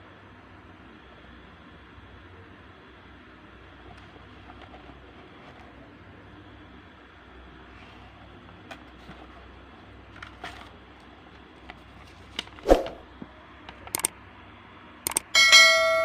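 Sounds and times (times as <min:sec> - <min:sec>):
sharp clicks: 0:13.8 - 0:14.1, 0:15.0 - 0:15.3.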